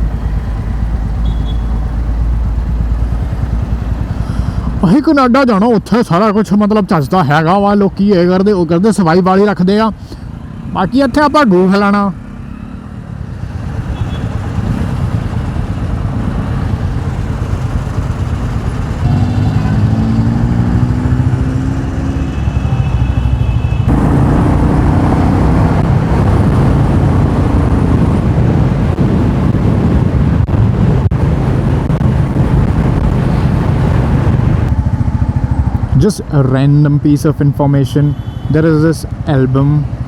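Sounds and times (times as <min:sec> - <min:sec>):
motorcycle engine running: 0:00.0 - 0:05.0, 0:13.4 - 0:36.0
wind noise on microphone: 0:13.3 - 0:36.0.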